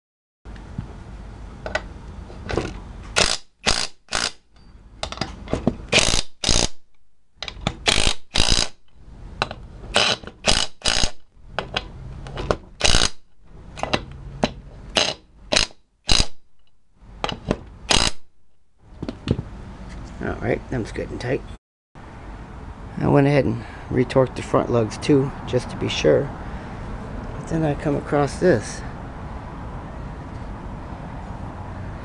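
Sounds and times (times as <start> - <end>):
torque wrench ratchet clicking: 3.2 - 4.4, 5.9 - 6.8, 7.8 - 8.8, 10.0 - 11.2, 12.8 - 13.2, 15.0 - 16.4, 17.9 - 18.2.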